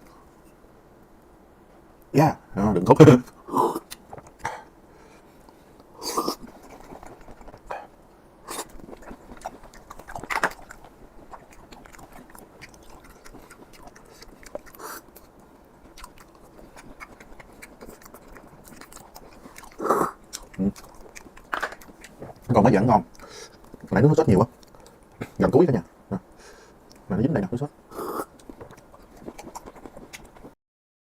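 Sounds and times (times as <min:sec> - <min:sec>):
person chewing: 0:03.3 - 0:04.6, 0:05.4 - 0:24.0, 0:27.9 - 0:30.5.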